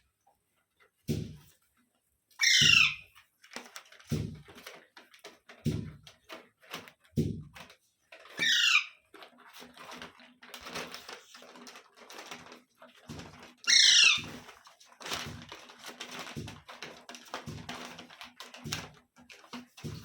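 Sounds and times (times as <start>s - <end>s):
small clicks and rustles: 0.0s - 20.0s
parrot screeching: 2.4s - 3.1s, 8.4s - 9.0s, 13.6s - 14.3s.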